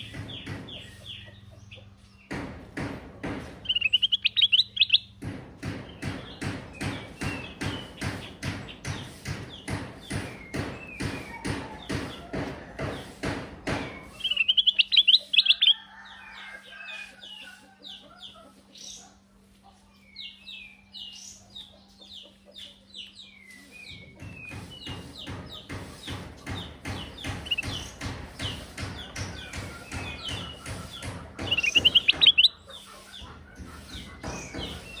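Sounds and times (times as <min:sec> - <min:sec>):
bright chattering bird notes: 0:03.3 - 0:15.9, 0:20.0 - 0:35.0
bulbul singing whistled notes: 0:03.7 - 0:05.1, 0:14.0 - 0:15.8, 0:31.5 - 0:32.6
dense clicking and tapping: 0:24.2 - 0:32.5.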